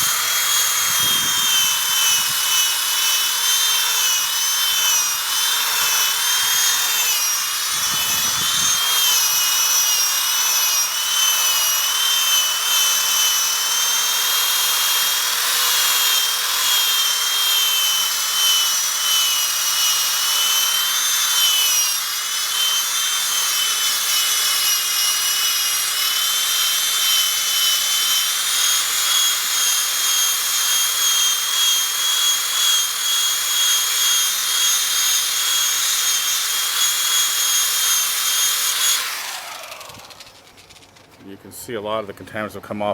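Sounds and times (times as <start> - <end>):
buffer motor whine: 5.8 - 22.0.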